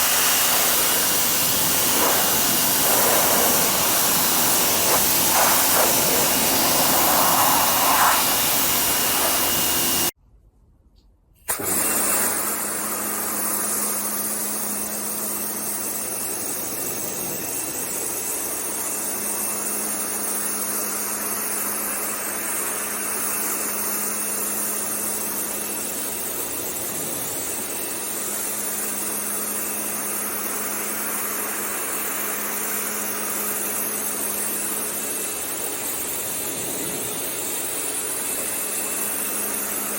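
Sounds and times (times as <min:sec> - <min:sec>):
pressure washer spraying: 0:00.0 - 0:10.1
pressure washer engine running: 0:00.0 - 0:10.2, 0:11.5 - 0:17.9, 0:27.5 - 0:39.9.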